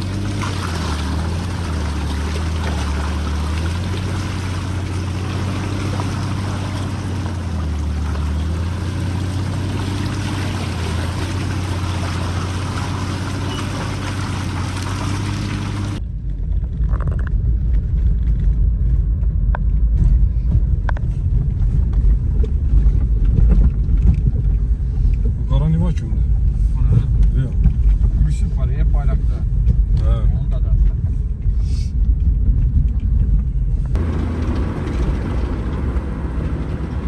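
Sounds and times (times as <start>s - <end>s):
low motor hum: 0.0s - 37.0s
low rumbling noise: 0.0s - 37.0s.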